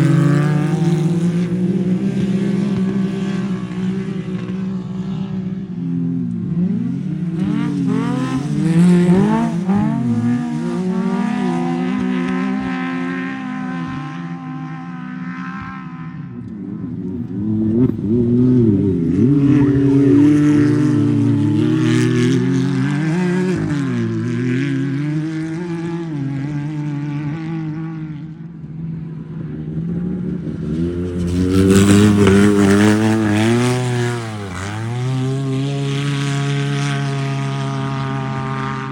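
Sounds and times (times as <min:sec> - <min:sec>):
race car engine revving: 0:06.5 - 0:28.4, 0:29.8 - 0:38.9.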